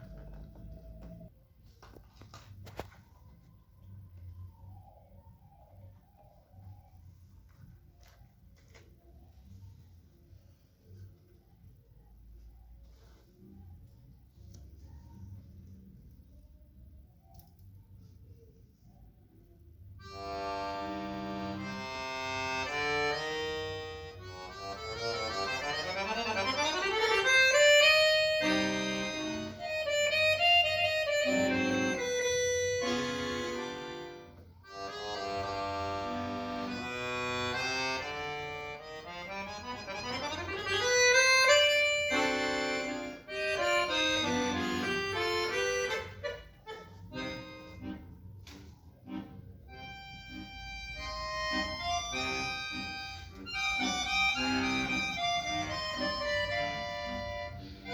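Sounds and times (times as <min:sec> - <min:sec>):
solo accordion: 0:20.0 - 0:48.2, 0:49.0 - 0:57.9.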